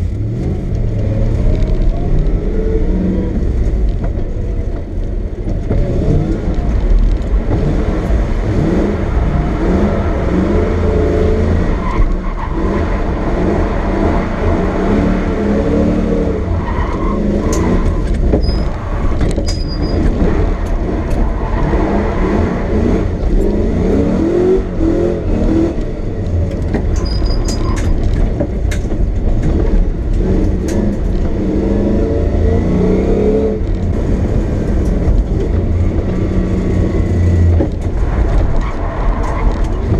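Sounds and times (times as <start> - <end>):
car engine revving: 0.0 - 39.9
sharp clicks and knocks: 16.9 - 21.4, 25.7 - 31.5, 37.3 - 39.9.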